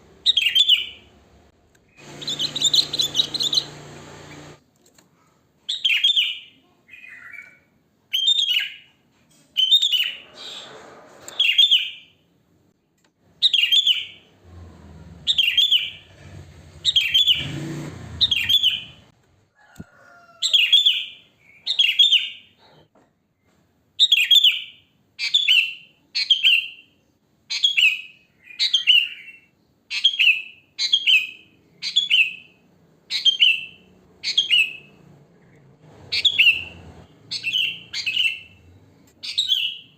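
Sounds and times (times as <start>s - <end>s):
bird chirping: 0.2s - 4.6s, 13.4s - 14.3s, 15.3s - 16.1s, 16.8s - 19.1s, 27.5s - 39.9s.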